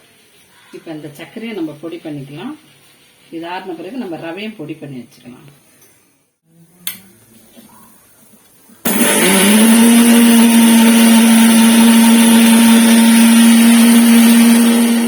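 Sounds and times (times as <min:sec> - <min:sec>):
mixer grinder motor: 0:08.8 - 0:15.0.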